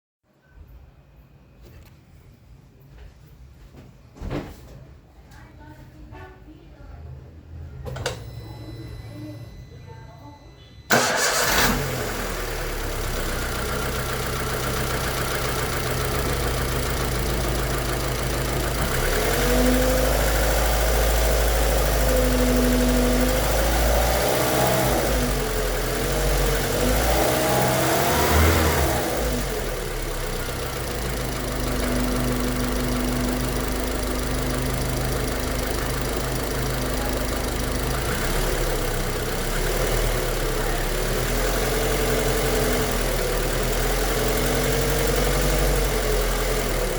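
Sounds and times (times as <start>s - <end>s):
car engine revving and idling: 10.9s - 46.9s
engine knocking: 12.8s - 46.9s.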